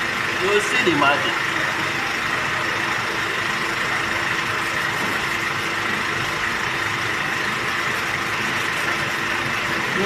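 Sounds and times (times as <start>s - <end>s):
motor-like hum: 0.0s - 10.0s.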